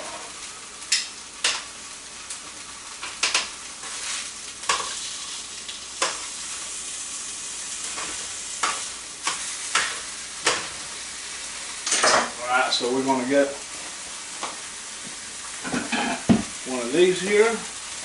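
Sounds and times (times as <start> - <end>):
food sizzling in a pan: 0.0 - 18.0
utensil clinking against pans: 15.7 - 16.3.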